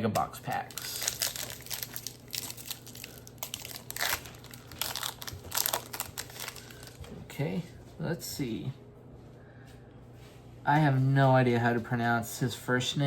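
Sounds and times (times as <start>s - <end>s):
foil wrapper crinkling and tearing: 0.2s - 7.1s.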